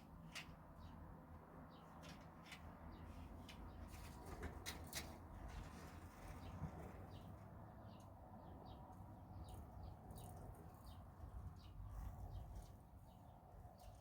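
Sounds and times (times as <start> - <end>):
small birds chirping: 7.1 - 14.0.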